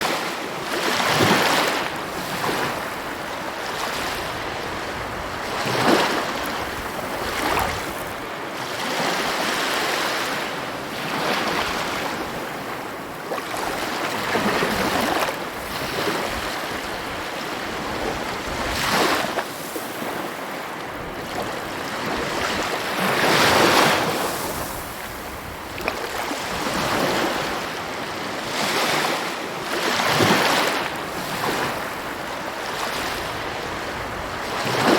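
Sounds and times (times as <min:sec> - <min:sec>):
sea waves breaking: 0:00.0 - 0:34.9.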